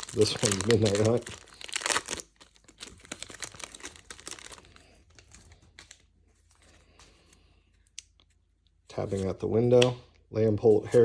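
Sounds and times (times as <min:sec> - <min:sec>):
foil wrapper crinkling and tearing: 0:00.0 - 0:06.1.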